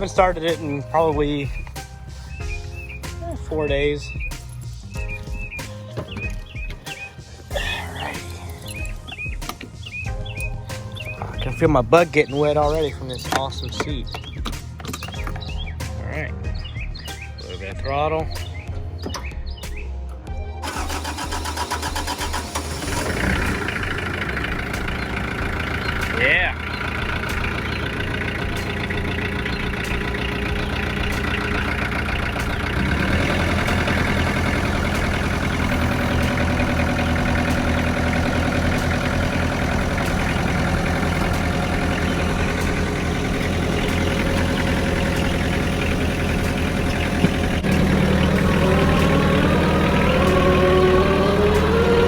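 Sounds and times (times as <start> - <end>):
tractor diesel engine running: 0.0 - 15.7, 20.6 - 52.0
rising whine: 31.9 - 52.0.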